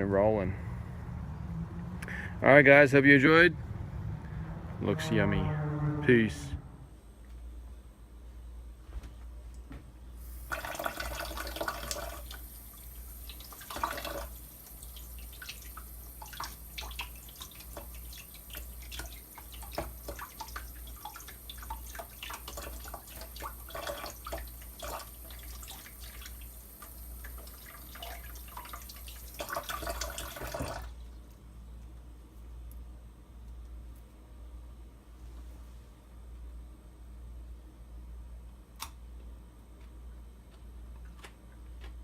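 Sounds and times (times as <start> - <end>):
tap water splashing on carrots: 13.2 - 30.9.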